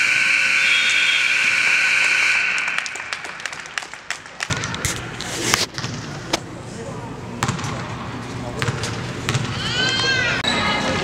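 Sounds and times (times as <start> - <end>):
scoreboard buzzer blast: 0.0 - 3.2
crowd noise: 2.3 - 11.0.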